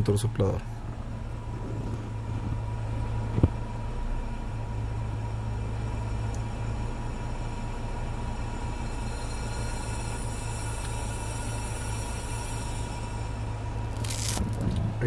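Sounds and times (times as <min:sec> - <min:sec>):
air conditioning blower hum: 0:00.0 - 0:15.0
car engine idling: 0:00.0 - 0:15.0
faint steady whistle: 0:06.7 - 0:13.9.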